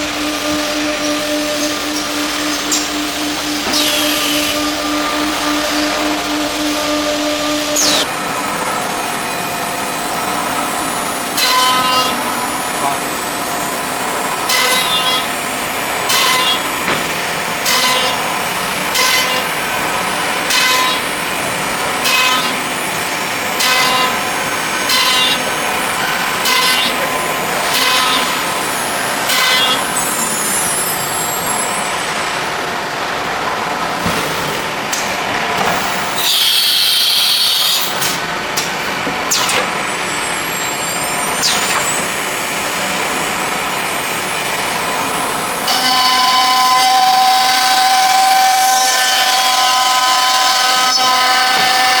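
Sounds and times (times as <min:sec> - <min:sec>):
router spindle cutting wood: 0:00.0 - 0:32.0, 0:39.3 - 0:52.0
pitch-sliding whine: 0:00.0 - 0:34.6.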